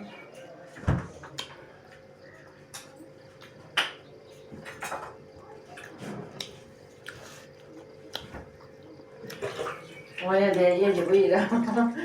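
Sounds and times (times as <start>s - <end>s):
faint steady hum: 0.0s - 12.0s
eating clicks and smacks: 1.3s - 4.1s, 5.7s - 10.7s.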